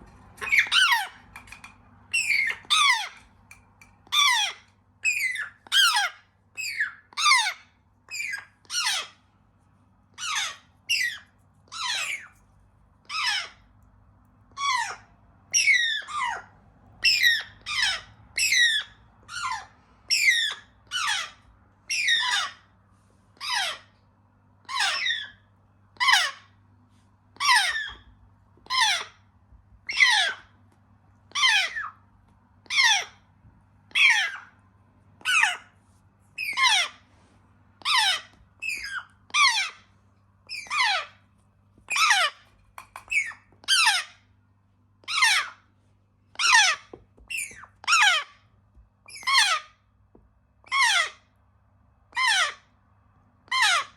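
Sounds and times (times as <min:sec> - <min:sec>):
parrot chicks squawking: 0:00.2 - 0:09.2, 0:10.2 - 0:12.4, 0:13.0 - 0:13.7, 0:14.5 - 0:22.7, 0:23.4 - 0:23.9, 0:24.6 - 0:26.6, 0:27.4 - 0:29.3, 0:29.9 - 0:30.6, 0:31.3 - 0:32.0, 0:32.6 - 0:33.3, 0:33.9 - 0:34.6, 0:35.2 - 0:35.7, 0:36.4 - 0:37.1, 0:37.8 - 0:39.9, 0:40.5 - 0:41.2, 0:41.9 - 0:44.2, 0:45.0 - 0:45.7, 0:46.3 - 0:48.4, 0:49.1 - 0:49.8, 0:50.6 - 0:51.2, 0:52.1 - 0:52.7, 0:53.5 - 0:53.9.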